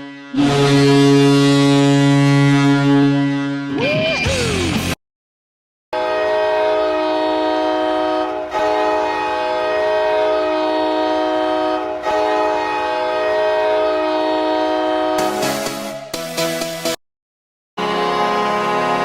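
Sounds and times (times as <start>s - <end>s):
goal horn blasts: 0.0s - 3.8s, 6.0s - 15.9s, 17.8s - 19.0s.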